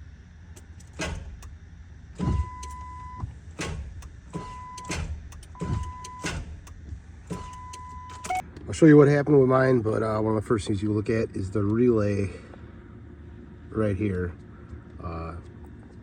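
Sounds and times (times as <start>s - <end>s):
high warning beep: 2.2s - 3.3s, 4.4s - 6.4s, 7.4s - 8.4s.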